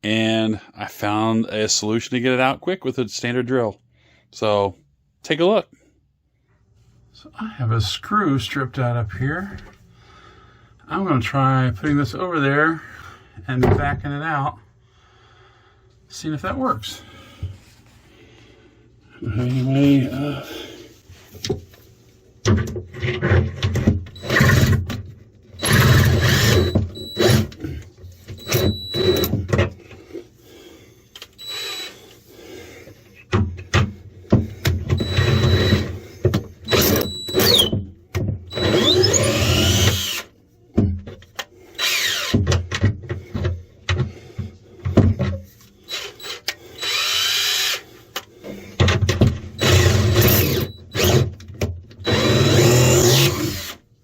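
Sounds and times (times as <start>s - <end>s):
drill whining in bursts: 24.1s - 24.9s, 25.6s - 27.7s, 28.3s - 29.4s, 31.3s - 32.1s, 34.9s - 37.8s, 38.5s - 40.3s, 41.8s - 42.4s, 45.9s - 47.8s, 49.6s - 51.4s, 52.0s - 53.8s.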